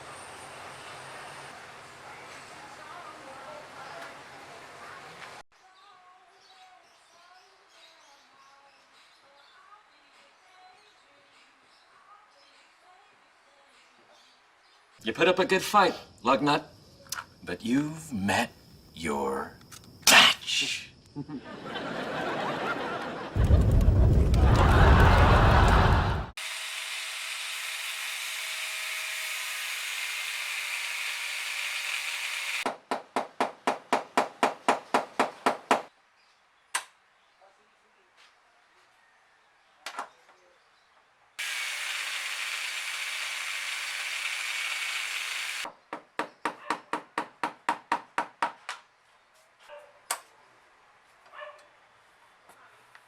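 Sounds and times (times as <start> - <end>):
power tool running: 26.4 - 32.6, 41.4 - 45.7.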